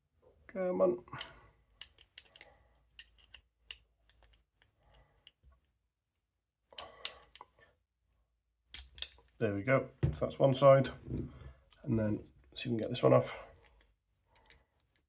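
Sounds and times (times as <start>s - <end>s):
handcuff clicking open: 1.2s - 5.4s, 6.8s - 7.5s, 8.7s - 9.2s, 13.6s - 15.0s
lock pick clicking and scratching: 1.2s - 5.4s, 13.6s - 15.0s.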